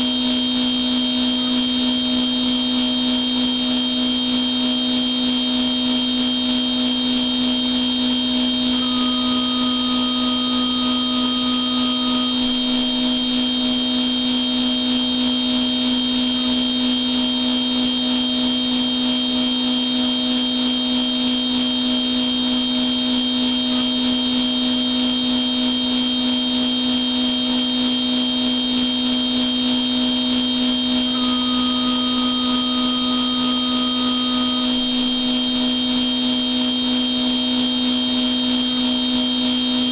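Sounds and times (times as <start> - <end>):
machine tool spindle whine: 0.0 - 39.9
thin high tone: 8.7 - 12.9, 30.6 - 36.6.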